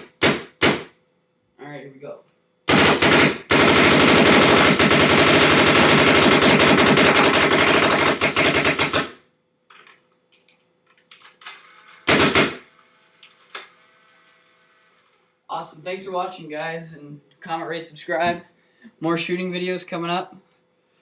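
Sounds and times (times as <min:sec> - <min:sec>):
paintball marker firing: 0:00.0 - 0:00.9.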